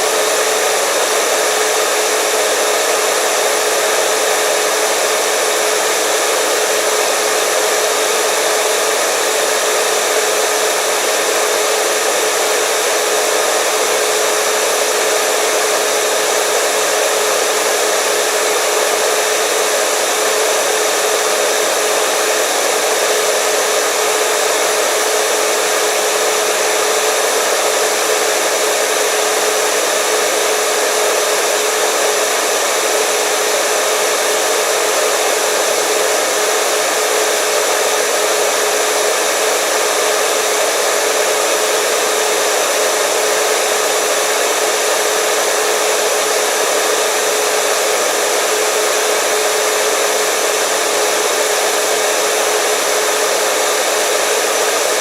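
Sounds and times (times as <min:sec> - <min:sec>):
hair dryer running: 0:00.0 - 0:55.0.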